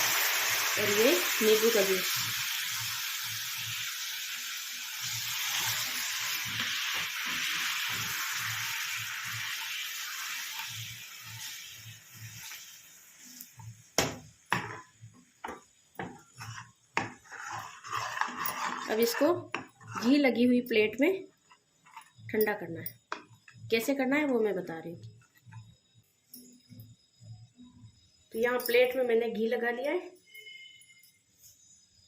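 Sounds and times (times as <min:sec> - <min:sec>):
melted sugar sizzling in a pan: 0:00.0 - 0:24.1
spoon stirring with soft knocking: 0:10.6 - 0:20.2, 0:21.3 - 0:23.7, 0:25.0 - 0:27.4.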